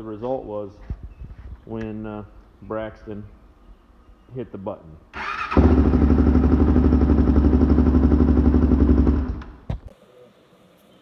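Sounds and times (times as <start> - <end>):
atv engine starting and running: 5.1 - 9.7.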